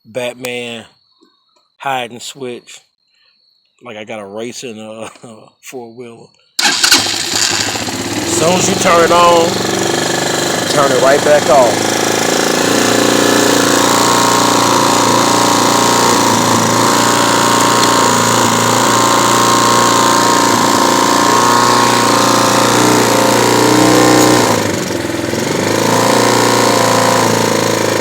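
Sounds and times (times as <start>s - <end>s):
atv engine idling: 6.6s - 28.0s.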